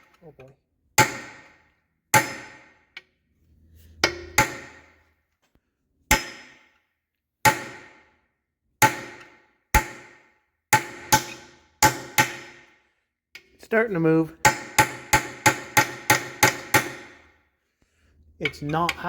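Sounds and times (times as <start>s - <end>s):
hammer striking metal: 1.0s - 3.0s, 4.0s - 5.1s, 6.1s - 6.8s, 7.4s - 8.1s, 8.8s - 12.8s, 14.4s - 17.4s.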